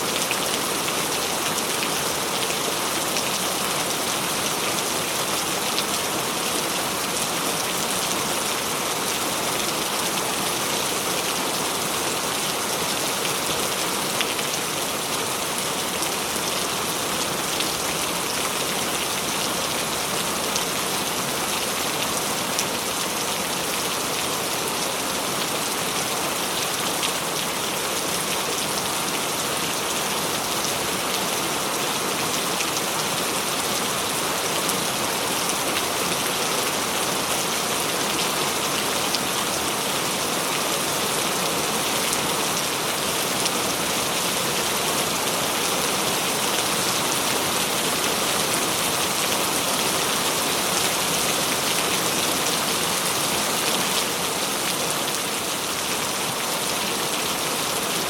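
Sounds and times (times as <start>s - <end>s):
dense rain falling: 0.0s - 58.0s.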